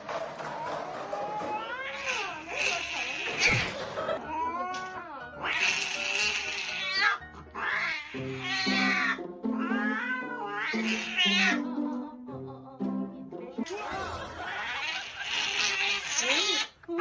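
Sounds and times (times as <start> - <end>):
background music: 0.0 - 16.9
cat yowling: 4.2 - 11.6, 14.4 - 16.7.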